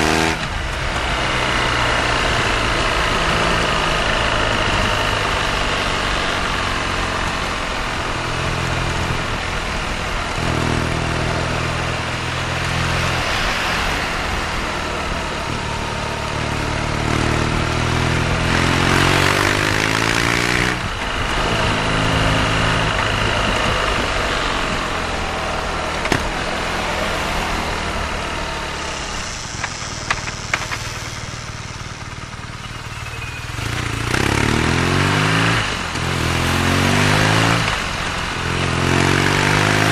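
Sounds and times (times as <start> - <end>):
motorcycle engine revving: 0.0 - 39.9
wind noise: 17.1 - 31.4.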